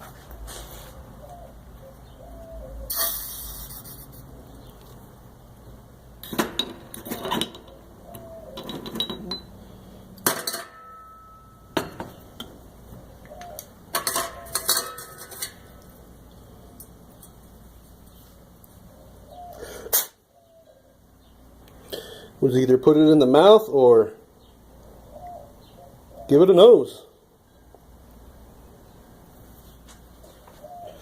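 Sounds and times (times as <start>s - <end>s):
metal tools clinking on workbench: 8.6s - 9.6s, 10.2s - 12.2s, 13.9s - 15.7s.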